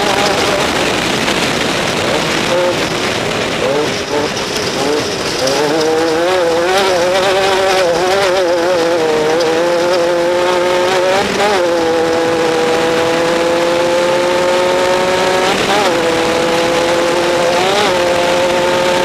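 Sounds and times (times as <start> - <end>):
race vehicle engine revving: 0.0 - 19.0.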